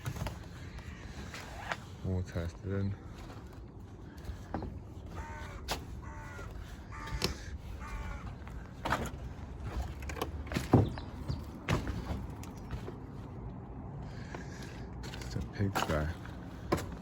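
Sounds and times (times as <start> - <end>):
bird harsh calls: 4.0 - 9.5.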